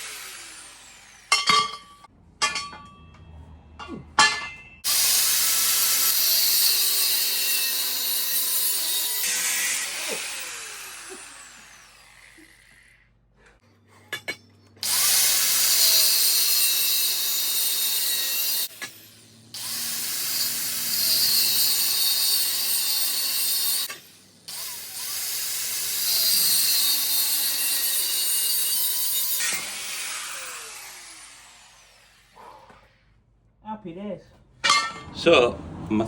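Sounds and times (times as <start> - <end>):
abrasive disc cutting steel: 0.0 - 3.3, 4.2 - 13.0, 14.2 - 32.4
tool winding down: 4.9 - 13.1.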